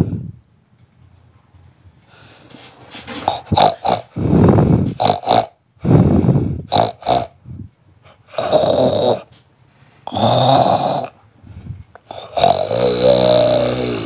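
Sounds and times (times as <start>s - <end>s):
short choppy breaths: 2.1s - 5.0s, 5.8s - 6.8s
person snoring loudly: 3.2s - 7.4s, 8.3s - 9.3s, 10.1s - 11.2s, 12.0s - 14.0s.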